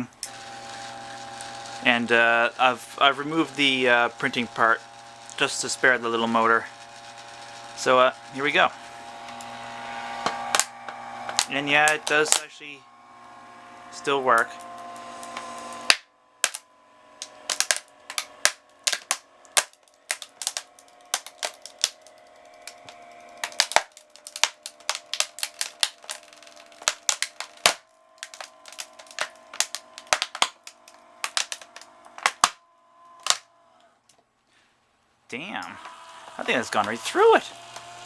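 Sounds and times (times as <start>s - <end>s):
steady hum: 0.0s - 34.0s
plastic cracking under a press: 0.0s - 34.3s, 35.6s - 38.0s.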